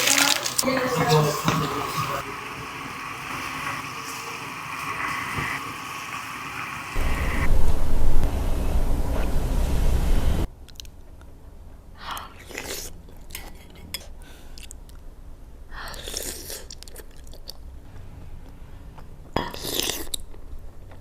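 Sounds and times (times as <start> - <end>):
loud noisy bursts: 5.7 - 10.5
person chewing wetly: 16.0 - 17.6, 19.4 - 21.0.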